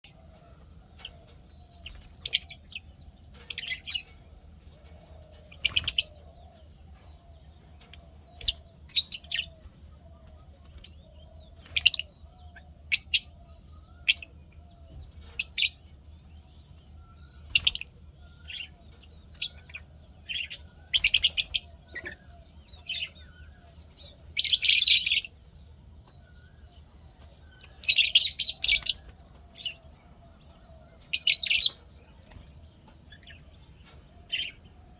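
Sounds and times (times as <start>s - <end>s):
lovebirds chirping: 0.0s - 34.9s
lovebirds rapid chattering: 0.0s - 34.9s.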